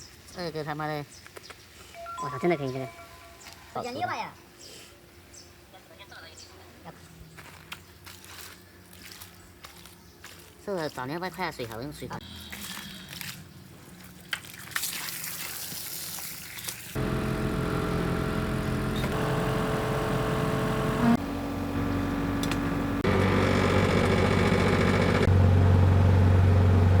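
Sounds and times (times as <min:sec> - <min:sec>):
engine running: 0:17.0 - 0:27.0.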